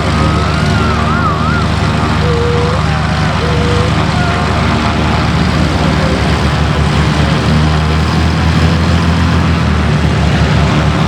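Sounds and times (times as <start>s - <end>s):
radial engine and propeller throbbing: 0.0s - 11.0s.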